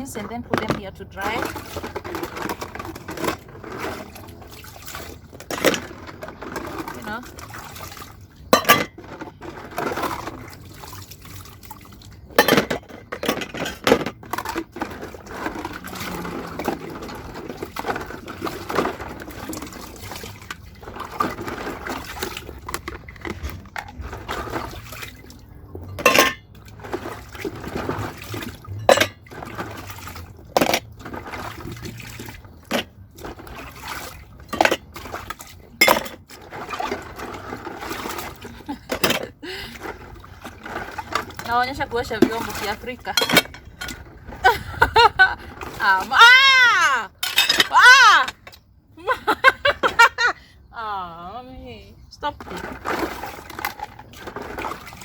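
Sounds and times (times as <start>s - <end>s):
water sloshing and trickling: 0.0s - 55.0s
dishes clinking together: 8.6s - 9.0s, 26.0s - 26.4s.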